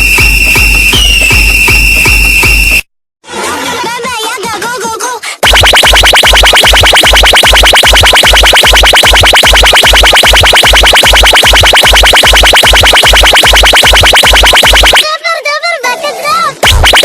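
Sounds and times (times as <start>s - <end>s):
electronic dance music: 0.0s - 2.8s, 5.4s - 15.0s, 16.6s - 17.0s.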